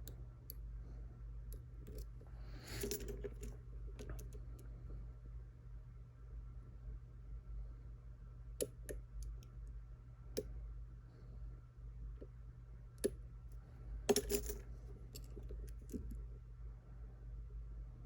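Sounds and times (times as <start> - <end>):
steady low hum: 0.0 - 18.0
lock pick clicking on pins: 14.1 - 14.6.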